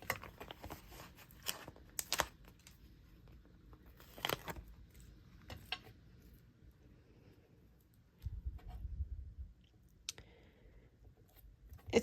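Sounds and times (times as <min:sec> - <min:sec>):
sticker peeling and crinkling: 0:00.0 - 0:02.9, 0:03.7 - 0:05.9.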